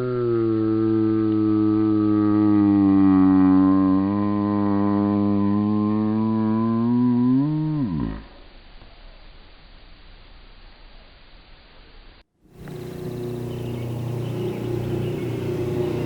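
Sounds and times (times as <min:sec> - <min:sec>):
slowed cat yawn droning tone: 0:00.0 - 0:08.5.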